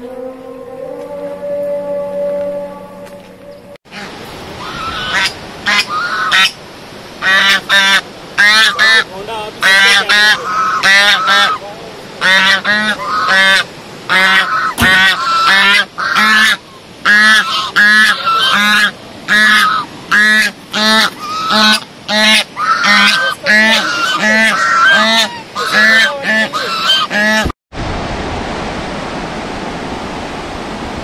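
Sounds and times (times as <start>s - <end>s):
flock of birds honking: 7.2s - 11.6s, 12.2s - 27.5s.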